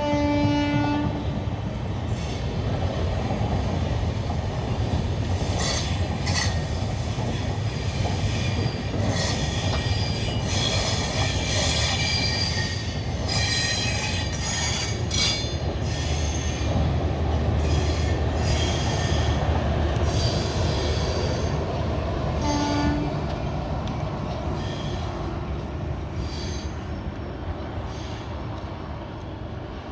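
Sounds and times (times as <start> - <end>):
train horn toot: 0.0 - 1.3, 22.4 - 23.3
train wheels rumbling on rail: 0.0 - 29.9.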